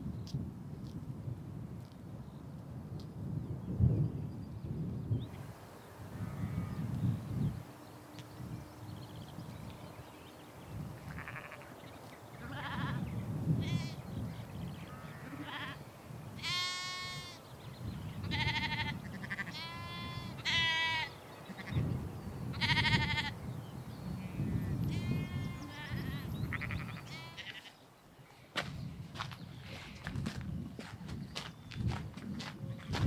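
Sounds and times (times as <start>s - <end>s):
low wind rumble: 0.0s - 27.5s, 28.2s - 33.0s
sheep bleating: 11.1s - 11.7s, 12.4s - 13.0s, 14.9s - 15.8s, 16.4s - 17.4s, 18.3s - 21.8s, 22.6s - 23.4s, 24.9s - 27.7s.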